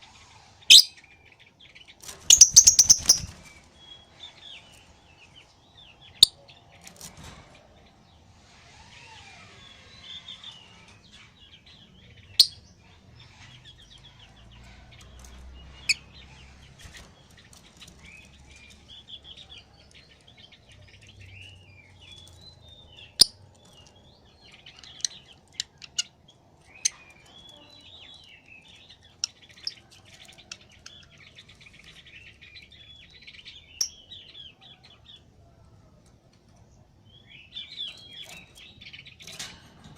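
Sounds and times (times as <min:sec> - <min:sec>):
lovebird twittering chirps: 0:00.7 - 0:00.9, 0:02.3 - 0:03.4.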